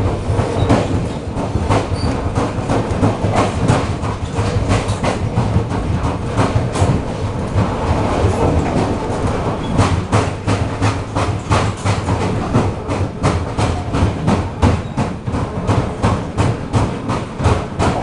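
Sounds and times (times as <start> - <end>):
low hum of running train: 0.0 - 18.0
train bogie knocking: 0.0 - 18.0.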